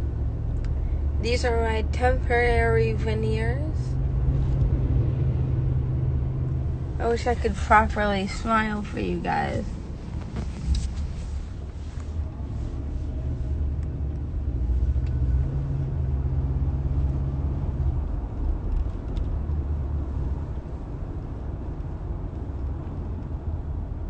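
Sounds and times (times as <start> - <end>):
low hum: 0.0 - 24.0
low steady rumble: 0.0 - 24.0.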